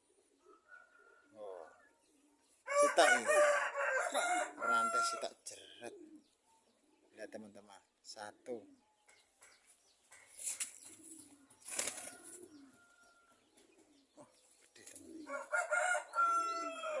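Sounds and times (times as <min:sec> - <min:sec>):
brief rustles: 0:10.1 - 0:11.0.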